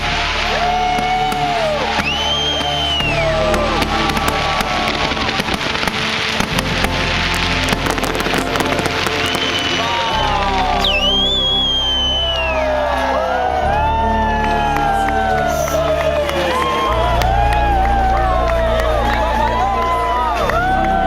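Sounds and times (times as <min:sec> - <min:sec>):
fireworks banging and crackling: 0:00.0 - 0:11.5
loud music with bass line: 0:00.0 - 0:16.3.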